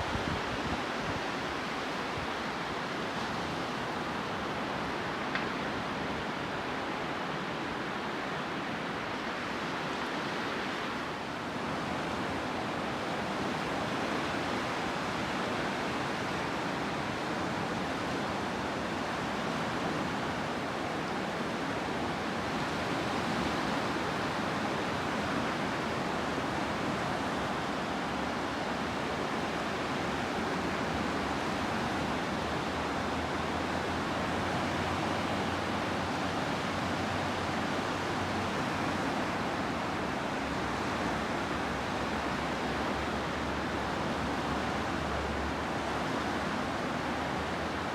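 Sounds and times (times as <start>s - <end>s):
sea surf washing on shore: 0.0s - 47.9s.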